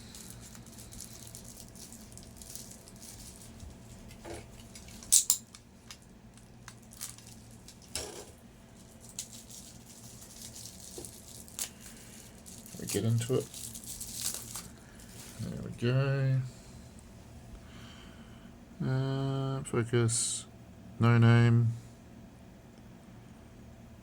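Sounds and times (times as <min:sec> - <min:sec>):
wrapping rustling: 0:00.0 - 0:08.0, 0:08.6 - 0:15.8.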